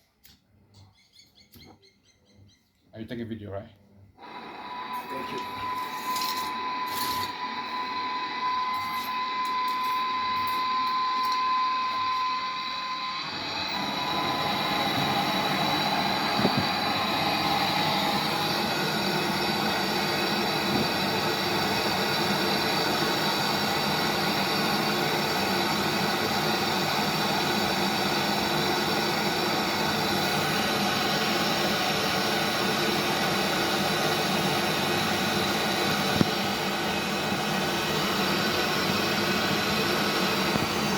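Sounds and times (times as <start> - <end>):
brazing torch flame hissing: 4.2 - 40.9
steady high whine: 4.2 - 40.9.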